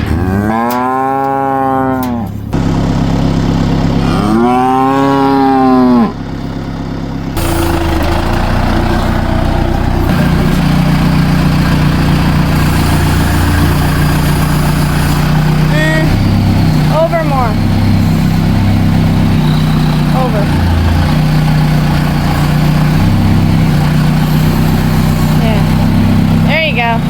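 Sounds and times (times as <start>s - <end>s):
cow mooing: 0.0s - 2.4s, 4.0s - 6.2s
engine idling: 2.3s - 4.4s, 6.1s - 27.0s.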